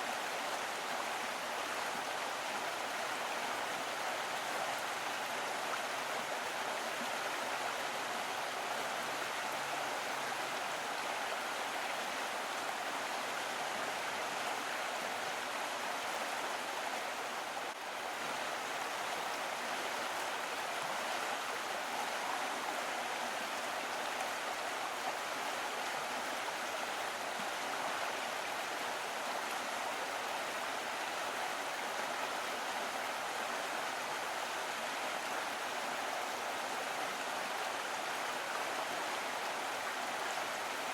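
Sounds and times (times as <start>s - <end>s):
small stream flowing: 0.0s - 40.9s.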